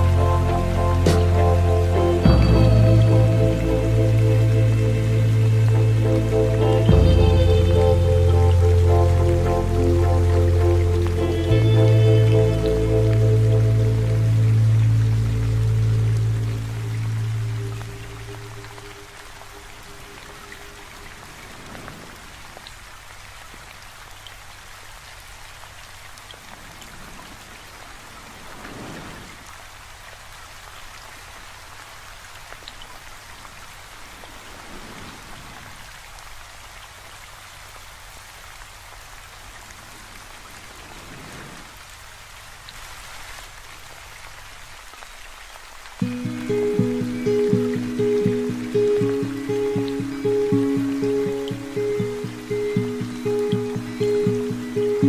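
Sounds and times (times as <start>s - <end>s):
music: 0.0s - 19.0s, 46.0s - 55.0s
steady rain falling: 0.0s - 55.0s.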